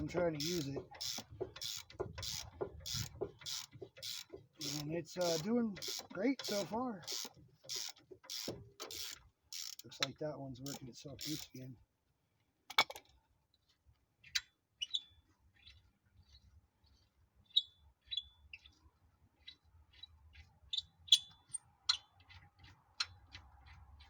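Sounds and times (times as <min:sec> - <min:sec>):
hand ratchet clicking: 0:00.0 - 0:11.6.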